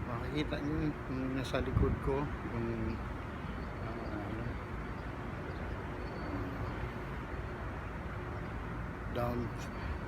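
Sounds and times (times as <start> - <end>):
faint distant voices: 0.0 - 10.0
low rumbling background noise: 0.0 - 10.0.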